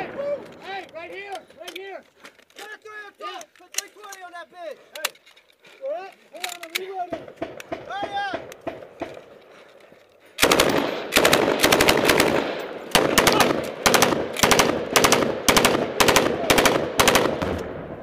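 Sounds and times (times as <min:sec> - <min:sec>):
machine gun automatic fire: 0:10.4 - 0:17.6.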